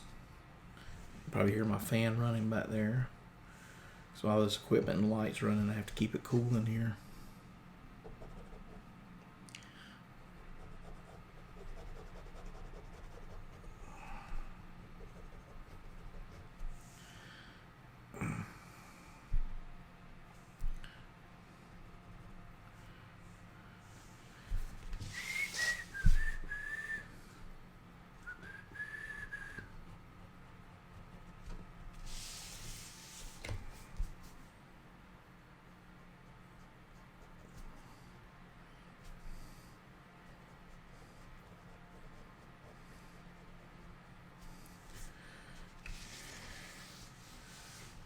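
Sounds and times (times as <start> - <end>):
electric fan humming: 0.0 - 48.0
pencil scratching while drawing: 8.0 - 8.8, 10.2 - 13.8, 14.8 - 16.8, 29.9 - 33.4, 40.3 - 44.6
person whistling: 25.1 - 27.1, 28.2 - 29.7.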